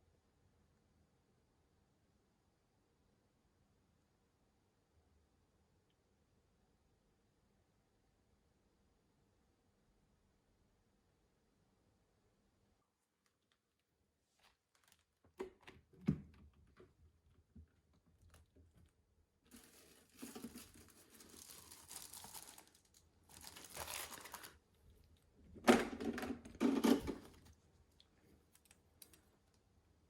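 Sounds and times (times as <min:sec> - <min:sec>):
packaging tearing and crinkling: 0:19.5 - 0:24.6.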